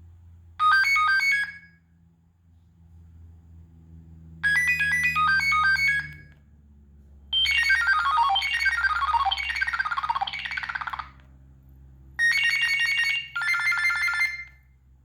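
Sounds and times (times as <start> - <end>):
phone ringtone melody: 0.6 - 1.7, 4.4 - 6.3, 7.4 - 11.2, 12.2 - 14.6.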